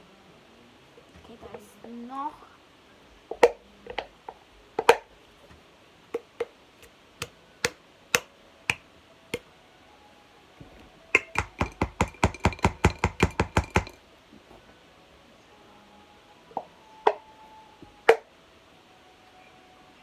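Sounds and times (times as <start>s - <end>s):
wooden stick tapping a container: 6.2s - 8.8s, 11.2s - 14.0s.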